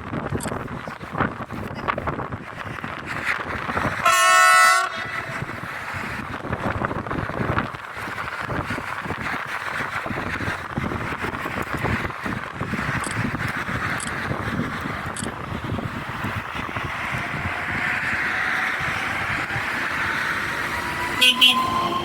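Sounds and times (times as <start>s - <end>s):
train rumbling on track: 0.0s - 22.0s
train horn blast: 4.0s - 5.4s, 21.0s - 22.0s.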